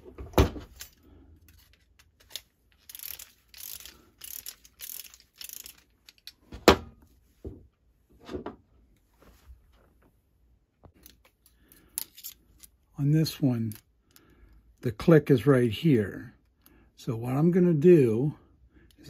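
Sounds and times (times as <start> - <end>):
clock winding ratchet clicks: 1.5 - 6.3.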